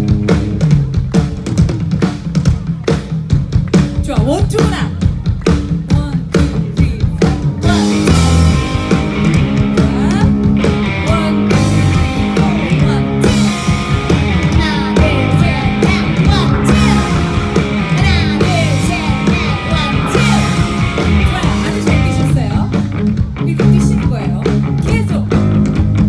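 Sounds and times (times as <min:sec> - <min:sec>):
rock band playing: 0:00.0 - 0:26.0
person singing: 0:05.9 - 0:08.8, 0:09.7 - 0:13.7, 0:14.4 - 0:25.3.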